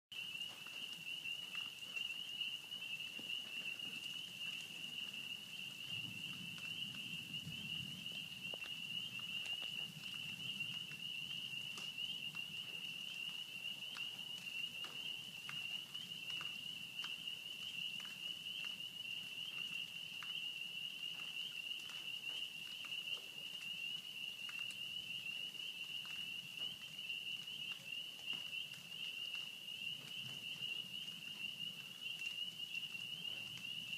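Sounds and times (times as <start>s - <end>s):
rain pattering and dripping: 0.1s - 33.9s
distant thunder rumble: 4.7s - 12.8s.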